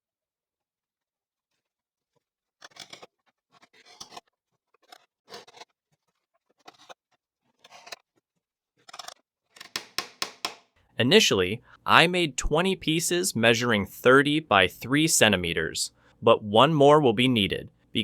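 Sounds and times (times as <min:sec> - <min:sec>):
wooden pieces scraping: 0:02.1 - 0:10.8.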